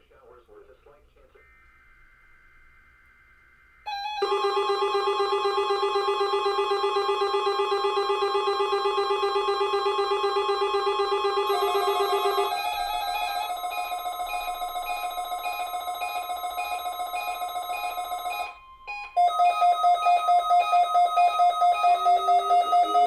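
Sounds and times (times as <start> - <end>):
loud pulsing alert tone: 3.9 - 18.5
pulsing trilling alert beeps: 3.9 - 23.0.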